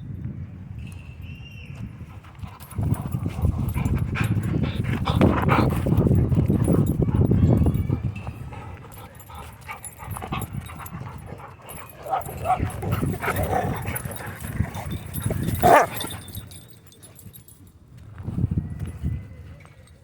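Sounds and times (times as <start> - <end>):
dogs playing: 2.1 - 17.7.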